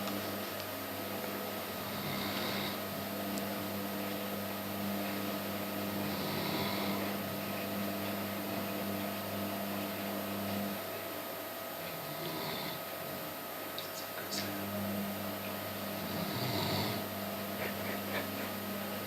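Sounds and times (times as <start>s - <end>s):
steady low hum: 0.0s - 19.0s
dog snoring: 1.8s - 2.9s, 5.9s - 7.6s, 11.9s - 12.9s, 15.9s - 18.5s.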